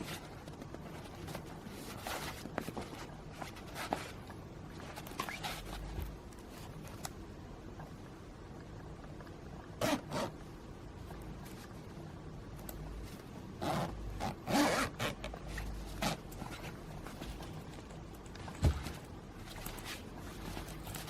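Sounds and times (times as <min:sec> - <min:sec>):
zipper pulled in rasping runs: 0:09.8 - 0:10.3, 0:13.6 - 0:16.8.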